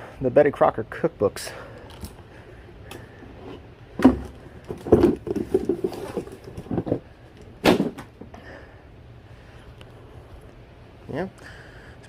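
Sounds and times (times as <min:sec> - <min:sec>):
belongings clattering and rustling: 0:02.9 - 0:08.4
boxes thumping: 0:04.0 - 0:08.3.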